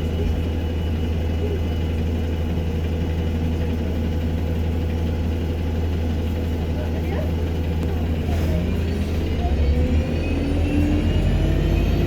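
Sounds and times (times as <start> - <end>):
bus engine droning: 0.0 - 12.0.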